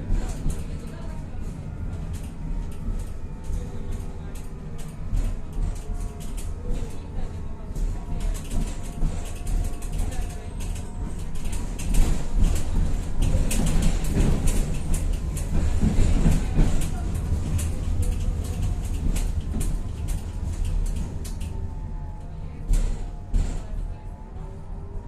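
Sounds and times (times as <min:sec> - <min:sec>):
tram wheels rumbling on rails: 0:00.0 - 0:25.0.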